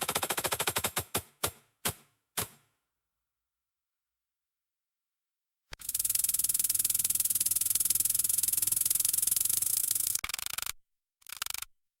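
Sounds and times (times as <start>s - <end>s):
grain kernels rattling into intake: 5.8s - 11.7s.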